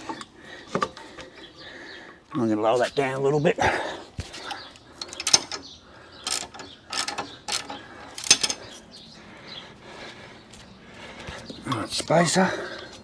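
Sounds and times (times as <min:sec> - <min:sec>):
metallic ratcheting clicks: 0:04.5 - 0:08.7.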